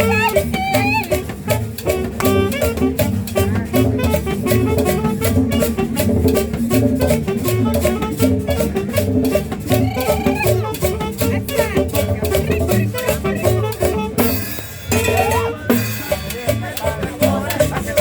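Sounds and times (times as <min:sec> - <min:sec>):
tropical dance music: 0:00.0 - 0:02.8, 0:09.3 - 0:18.0.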